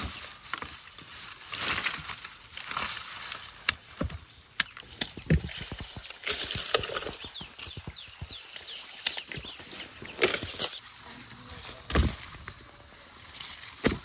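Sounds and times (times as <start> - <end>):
knocks and clicks: 4.0 - 9.6
chicks peeping: 6.6 - 10.9.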